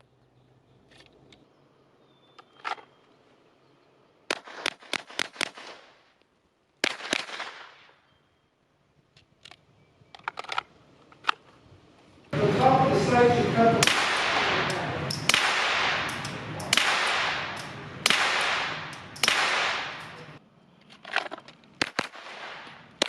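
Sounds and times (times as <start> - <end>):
pistol shots: 4.3 - 6.0, 6.8 - 8.0, 13.8 - 20.4, 21.8 - 23.0.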